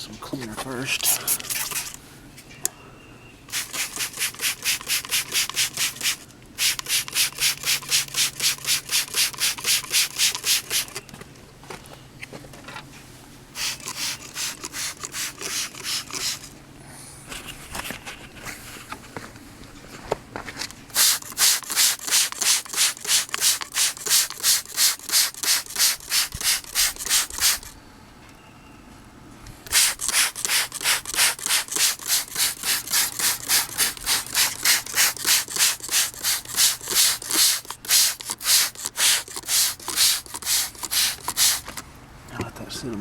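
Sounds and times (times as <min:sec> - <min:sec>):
rhythmic hissing brush strokes: 0:00.7 - 0:02.0, 0:03.5 - 0:11.0, 0:13.5 - 0:16.6, 0:20.9 - 0:27.7, 0:29.7 - 0:41.8.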